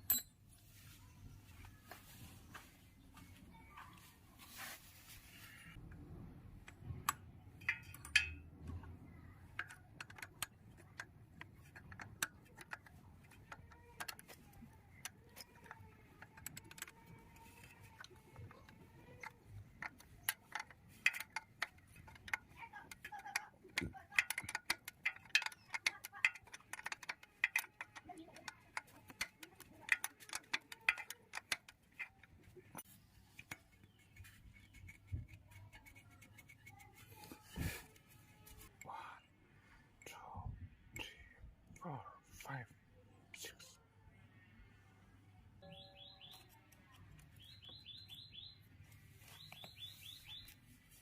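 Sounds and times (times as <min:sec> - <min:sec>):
bike chain metal clicking: 0:11.7 - 0:32.6.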